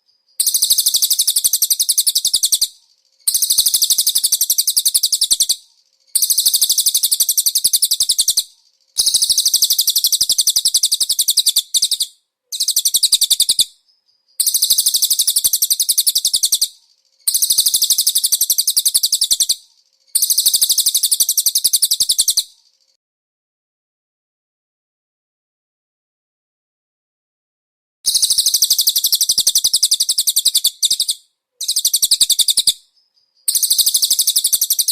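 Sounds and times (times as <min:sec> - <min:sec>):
bird chattering trills: 0:00.4 - 0:02.7, 0:03.3 - 0:05.6, 0:06.2 - 0:13.7, 0:14.4 - 0:16.7, 0:17.3 - 0:19.6, 0:20.2 - 0:22.5, 0:28.1 - 0:32.8, 0:33.5 - 0:34.9.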